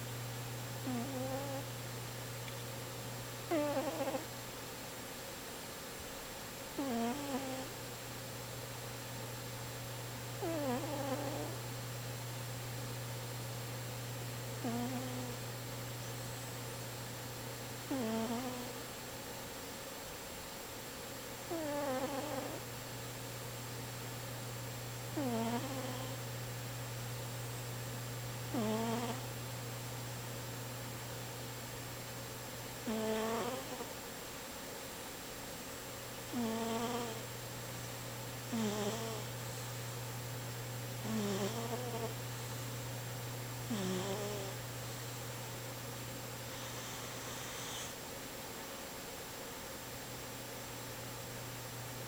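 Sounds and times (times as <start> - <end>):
steady low hum: 0.0 - 52.0
cat snoring: 0.8 - 1.7, 3.5 - 4.3, 6.8 - 7.8, 10.3 - 11.6, 14.6 - 15.4, 17.8 - 18.8, 21.4 - 22.7, 25.1 - 26.2, 28.5 - 29.4, 32.8 - 33.9, 36.3 - 37.3, 38.5 - 39.4, 41.0 - 42.2, 43.6 - 44.6, 46.4 - 48.0.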